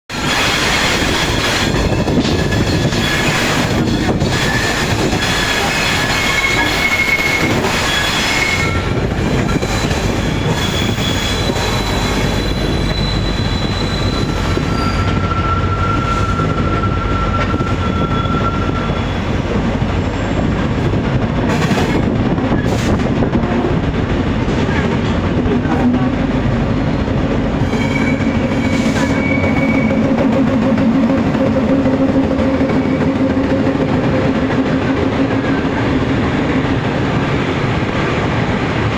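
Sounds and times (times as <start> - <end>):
train wheels rumbling on rails: 0.1 - 38.9
high wheel squeals: 0.3 - 20.5, 27.6 - 35.6.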